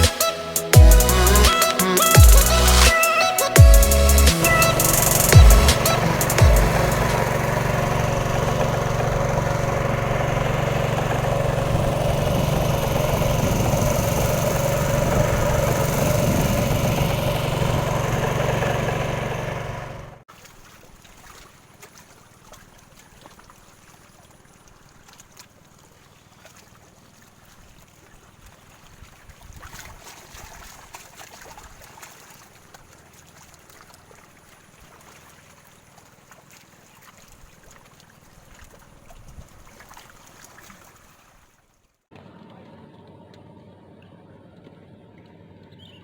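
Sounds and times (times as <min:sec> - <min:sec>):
small engine running: 0:00.0 - 0:20.2
water trickling: 0:04.6 - 0:41.7.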